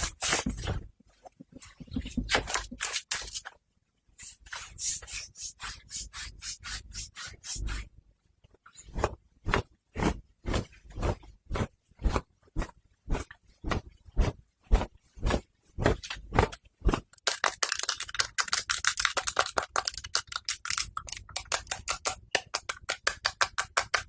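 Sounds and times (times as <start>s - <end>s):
scratching and rubbing on fabric: 4.2s - 7.9s, 8.7s - 17.2s.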